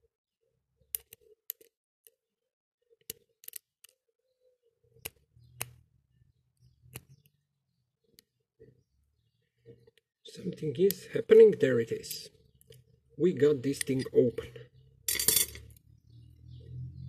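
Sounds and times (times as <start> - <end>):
lock pick metallic clicks: 3.1 - 4.0.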